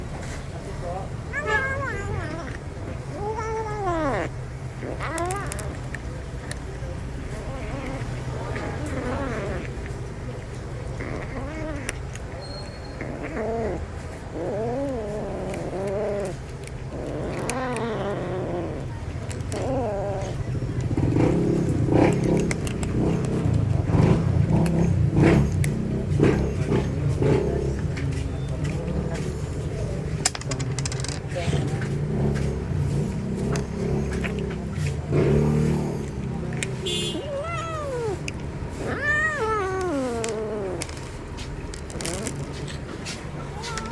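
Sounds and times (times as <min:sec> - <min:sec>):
cat growling while eating: 0:00.8 - 0:27.9, 0:29.2 - 0:43.9
cat calling while eating: 0:01.2 - 0:06.0, 0:36.7 - 0:41.1, 0:43.4 - 0:43.9.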